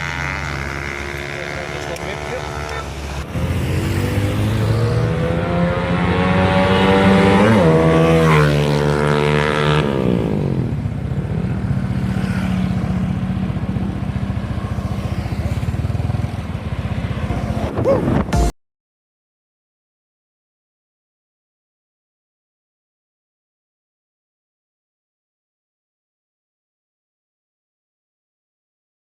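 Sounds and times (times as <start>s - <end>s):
motorcycle engine revving: 0.0s - 18.4s.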